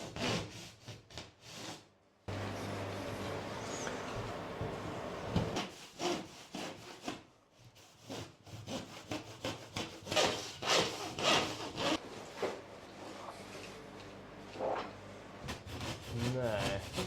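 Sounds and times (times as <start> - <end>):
handsaw cutting strokes: 2.4 - 12.0, 15.5 - 17.0.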